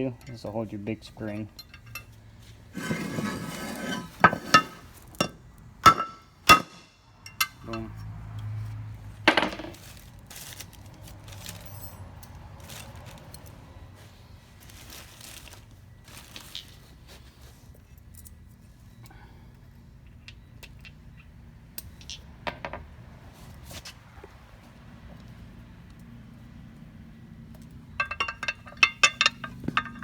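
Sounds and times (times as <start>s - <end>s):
metal clinks and scrapes: 0.1s - 8.7s, 9.4s - 13.8s, 27.9s - 30.0s.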